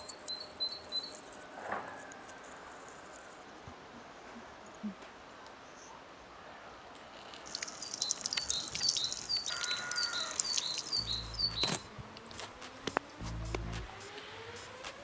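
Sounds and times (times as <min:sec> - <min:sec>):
songbird chirping: 0:00.0 - 0:03.2, 0:07.4 - 0:12.3
low rumble: 0:13.2 - 0:13.9.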